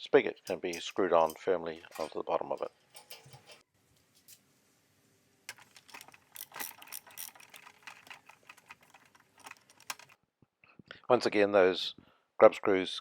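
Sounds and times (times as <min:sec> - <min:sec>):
metallic clicking of steel parts: 0:00.4 - 0:03.6, 0:05.5 - 0:10.2.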